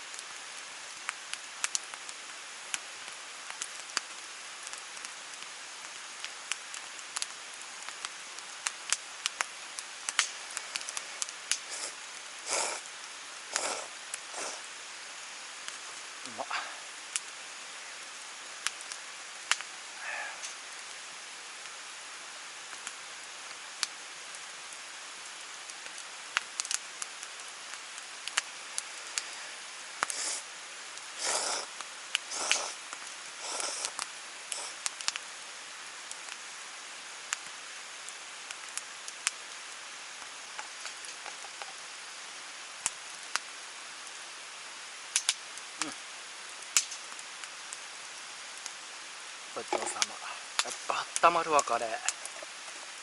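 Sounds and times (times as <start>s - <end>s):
person slurping noodles: 11.7s - 12.8s, 13.5s - 14.6s, 31.2s - 31.7s, 32.3s - 32.8s, 33.4s - 34.8s
stream rushing: 31.1s - 34.8s.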